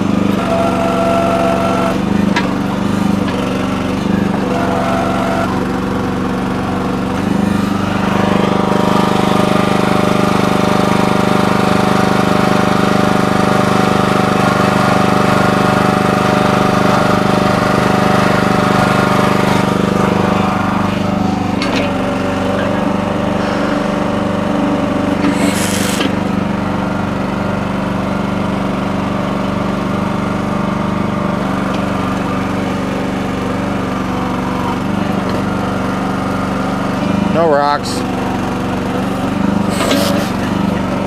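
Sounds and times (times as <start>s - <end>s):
mini backhoe engine running: 0.0s - 41.0s.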